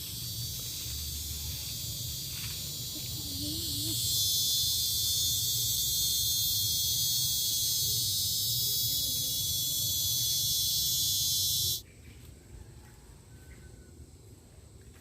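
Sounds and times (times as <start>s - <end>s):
high-pitched insect chorus: 0.0s - 11.8s.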